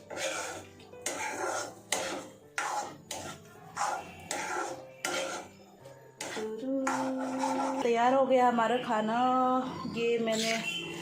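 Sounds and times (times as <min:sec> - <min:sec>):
utensil scraping frying pan: 0:00.0 - 0:08.2, 0:10.3 - 0:11.0.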